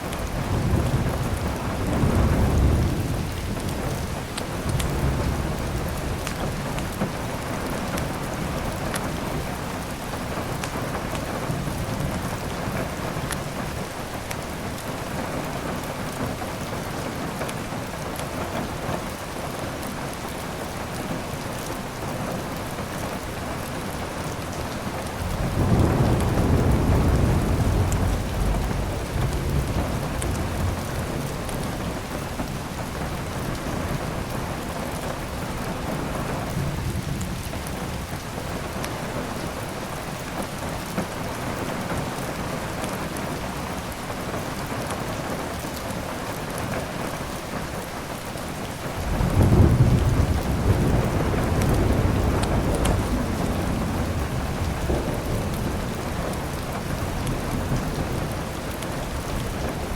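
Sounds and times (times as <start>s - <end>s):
steady rain: 0.0s - 59.9s
thunder rumbling: 0.2s - 9.5s, 23.9s - 38.3s, 49.0s - 59.9s.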